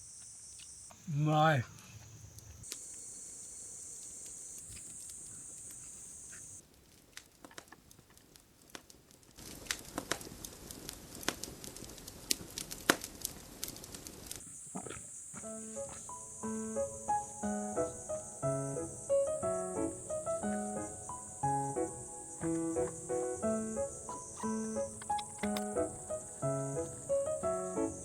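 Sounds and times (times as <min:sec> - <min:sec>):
crackling and snapping: 0:04.0 - 0:28.0
high-pitched insect drone: 0:15.2 - 0:28.0
soft clicks: 0:24.4 - 0:25.8.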